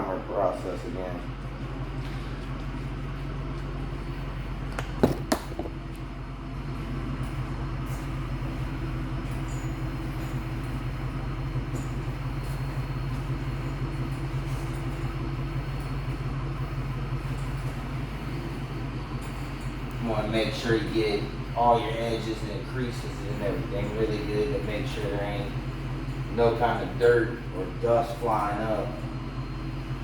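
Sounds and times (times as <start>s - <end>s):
low machine hum: 0.0s - 30.0s
sharp knocks: 4.8s - 5.8s.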